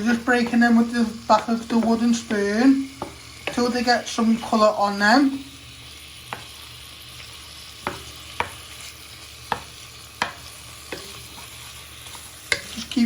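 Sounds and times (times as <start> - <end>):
wooden spoon knocking on pan: 0.0 - 4.6, 6.3 - 6.6, 7.8 - 8.7, 9.4 - 11.4
meat sizzling in a saucepan: 0.0 - 13.0.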